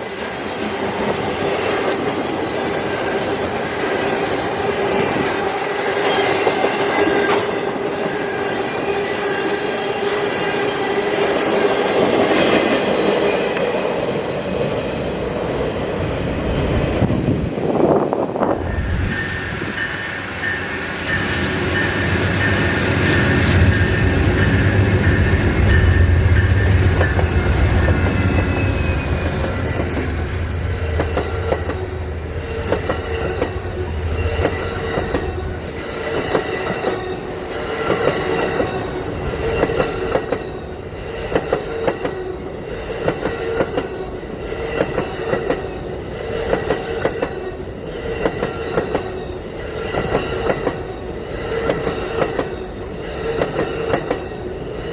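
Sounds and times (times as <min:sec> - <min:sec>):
diesel locomotive engine rumble: 0:00.0 - 0:54.9
train wheels clacking over rail joints: 0:48.0 - 0:54.4.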